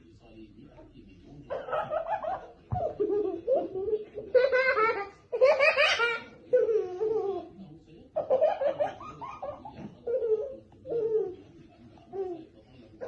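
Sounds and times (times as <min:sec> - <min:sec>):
people laughing: 0:01.4 - 0:11.5.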